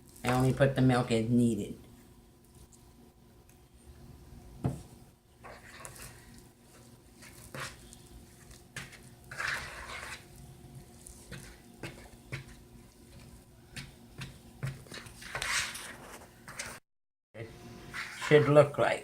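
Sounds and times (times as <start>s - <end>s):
spoon scraping a mixing bowl: 5.4s - 16.8s, 17.9s - 18.8s.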